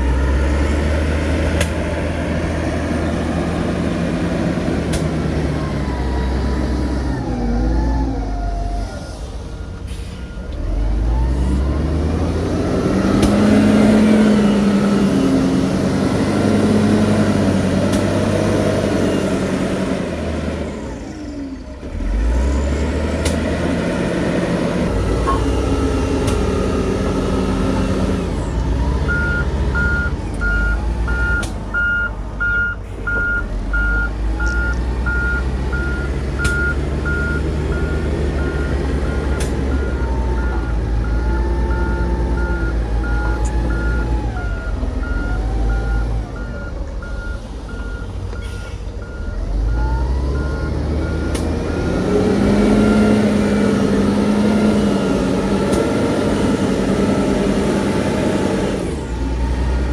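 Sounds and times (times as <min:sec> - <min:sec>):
heavy diesel machine engine: 0:00.0 - 0:59.9
reversing alarm beeping: 0:28.8 - 0:55.0.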